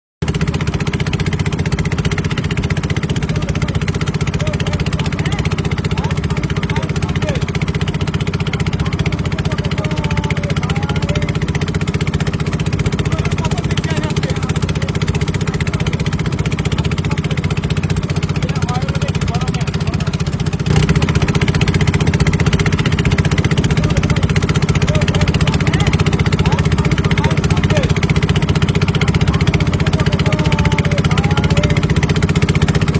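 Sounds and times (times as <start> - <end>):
engine chugging: 0.2 - 32.9.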